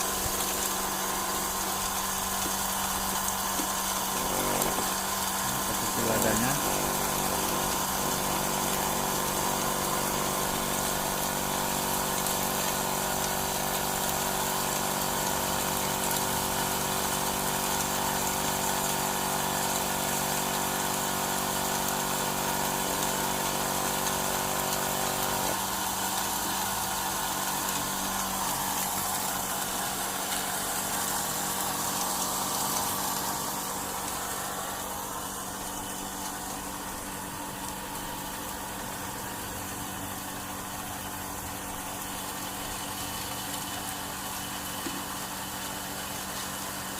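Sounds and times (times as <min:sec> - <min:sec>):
small petrol engine running: 0:00.0 - 0:25.6.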